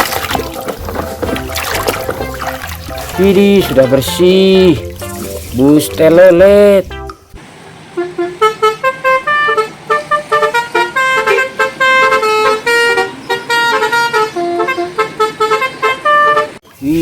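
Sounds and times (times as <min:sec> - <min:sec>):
bus horn playing a quick tune: 0:07.9 - 0:16.6.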